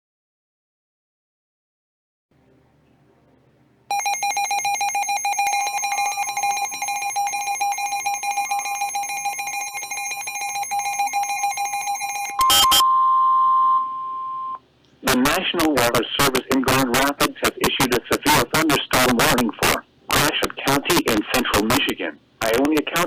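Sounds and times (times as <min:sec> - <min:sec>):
harsh two-tone alert signal: 0:03.9 - 0:14.6.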